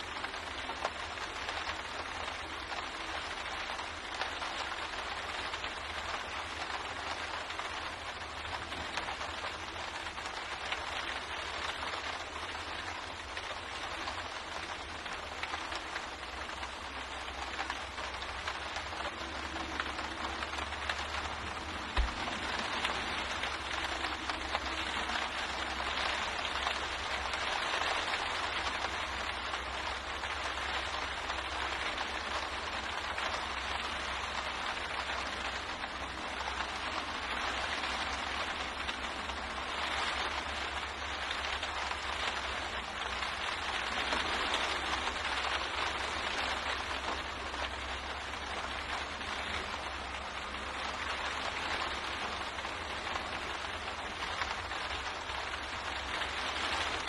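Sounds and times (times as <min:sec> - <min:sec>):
low steady hum: 0:00.0 - 0:57.0
rain pattering on a window: 0:00.0 - 0:57.0.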